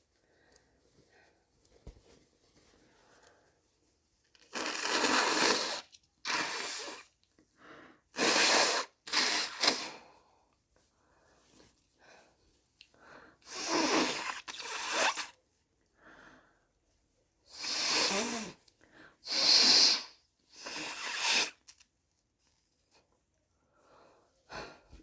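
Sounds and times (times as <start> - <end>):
person blowing snotty nose: 4.4 - 7.2, 8.1 - 10.0, 13.4 - 15.4, 17.5 - 18.6, 19.2 - 21.8.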